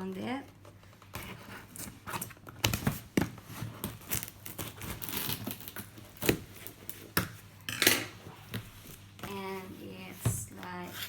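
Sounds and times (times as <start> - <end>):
wrapping crinkling: 3.6 - 7.1
tape ripping: 3.8 - 6.7.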